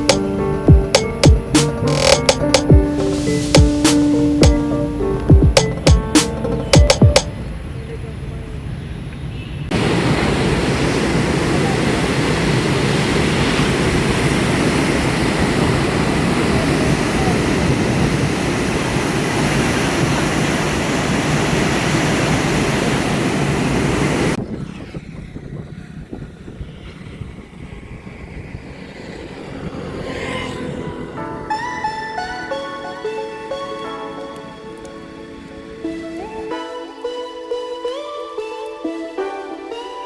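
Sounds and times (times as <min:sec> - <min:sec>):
music: 0:00.0 - 0:07.3, 0:31.2 - 0:40.0
road and wind noise: 0:00.0 - 0:36.5.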